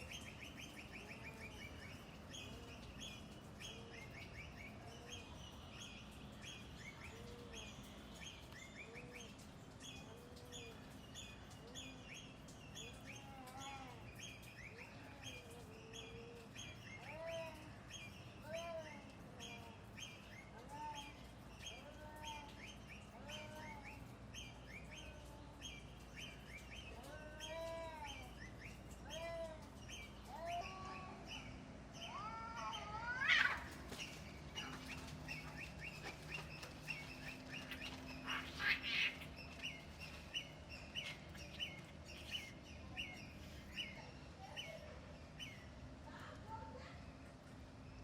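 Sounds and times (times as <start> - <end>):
low curved bird calls: 0.0 - 45.8
small birds chirping: 0.0 - 48.0
loud rising bird cry: 32.0 - 34.7, 37.6 - 39.8.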